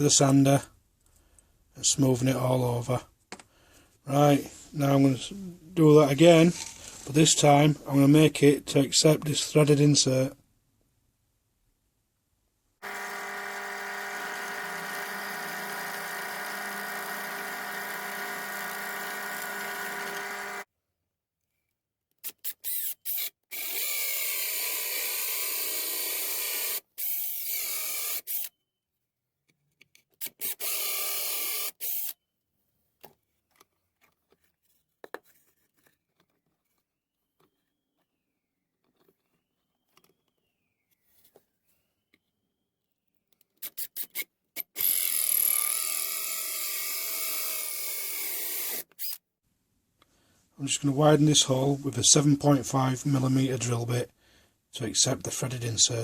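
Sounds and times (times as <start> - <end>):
drill cutting into wood: 12.8 - 20.7, 22.6 - 28.5, 30.2 - 32.2, 44.6 - 49.2
drill motor humming: 12.8 - 20.7.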